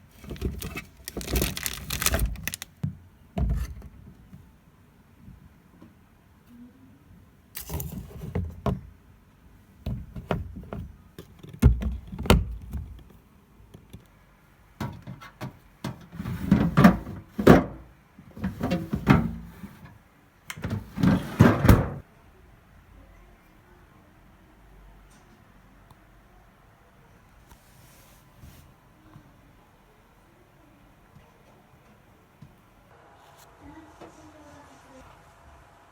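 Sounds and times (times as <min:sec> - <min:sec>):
household knocks and clatter: 0:00.2 - 0:04.2, 0:14.8 - 0:17.8, 0:18.4 - 0:19.9, 0:20.6 - 0:22.0.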